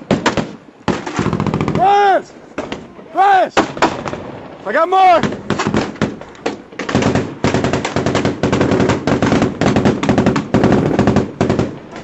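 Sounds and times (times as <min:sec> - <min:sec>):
automatic machine-gun fire: 0:06.8 - 0:11.8.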